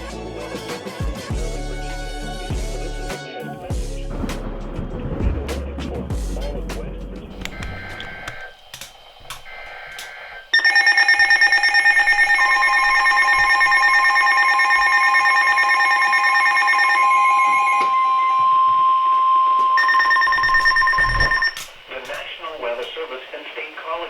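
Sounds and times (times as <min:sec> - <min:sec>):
chirpy data burst: 0:07.5 - 0:17.8, 0:19.5 - 0:21.9
shrill pulsing alarm tones: 0:07.5 - 0:21.8.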